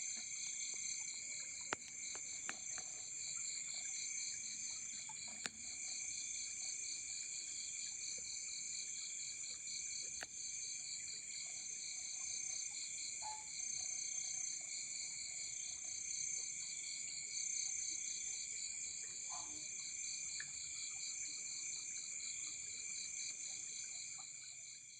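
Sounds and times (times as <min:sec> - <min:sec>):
faint click: 0:05.3 - 0:05.6.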